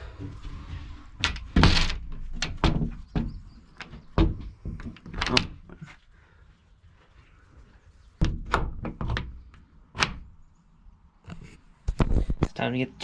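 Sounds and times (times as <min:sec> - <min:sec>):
knocks and thumps: 0:00.0 - 0:05.8, 0:08.2 - 0:09.4.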